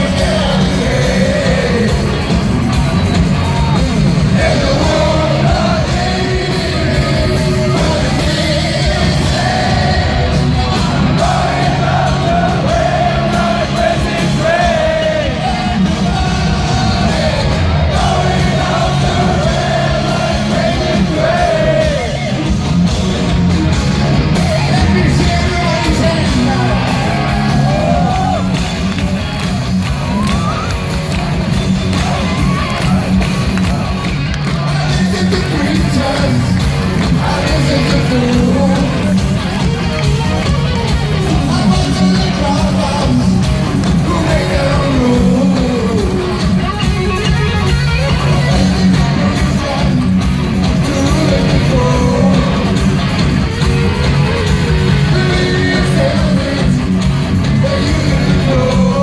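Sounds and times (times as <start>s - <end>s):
live heavy rock band: 0.0s - 59.0s
person singing: 34.8s - 39.5s, 41.3s - 46.8s, 50.8s - 53.1s, 54.4s - 59.0s.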